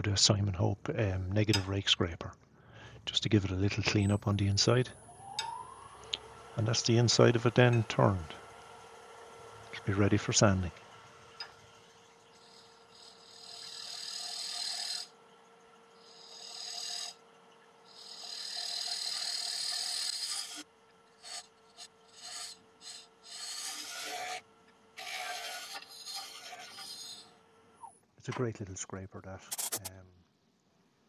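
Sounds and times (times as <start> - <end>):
faint steady hum: 0.0 - 31.0
scraper cutting wood on lathe: 12.3 - 15.1, 16.1 - 17.2, 17.9 - 20.6, 21.2 - 24.4, 25.0 - 27.4, 29.5 - 29.9.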